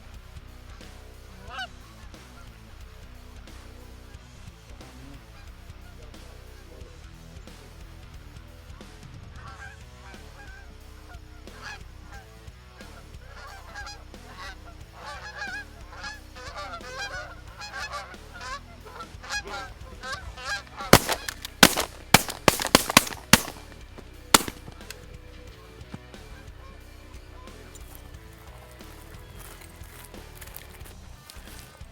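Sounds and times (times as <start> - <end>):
geese honking: 13.3 - 23.7, 24.3 - 24.9
shotgun shots: 21.0 - 25.1.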